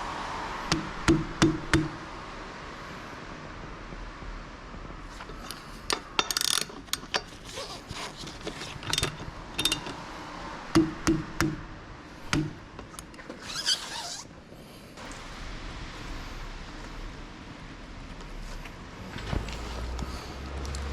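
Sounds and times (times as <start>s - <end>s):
metal tools clinking: 5.2s - 10.1s.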